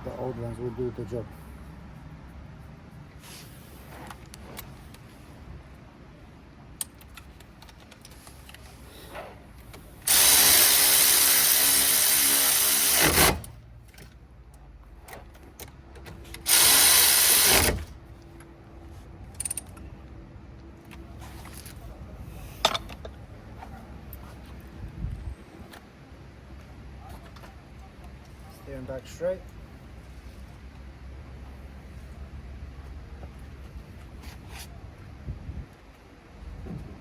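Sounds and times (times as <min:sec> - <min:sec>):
power tool driving screws: 0:10.1 - 0:13.6, 0:16.4 - 0:17.9.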